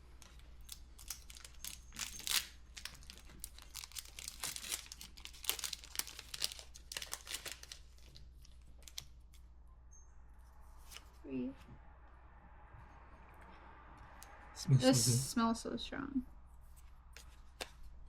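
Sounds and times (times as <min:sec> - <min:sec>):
foil wrapper tearing and crinkling: 0:00.2 - 0:09.3.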